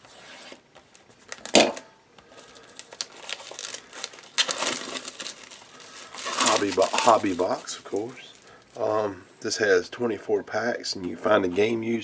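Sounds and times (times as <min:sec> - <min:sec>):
packaging rustling and crinkling: 0:02.3 - 0:08.9.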